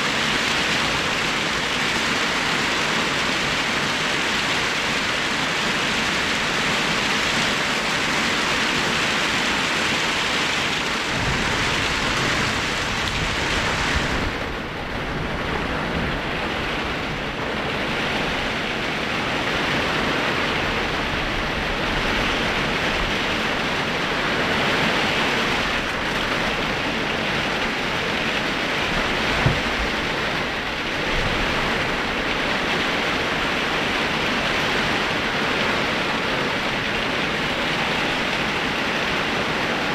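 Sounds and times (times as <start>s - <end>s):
heavy rain pouring: 0.0s - 39.9s
low thump: 29.4s - 29.9s.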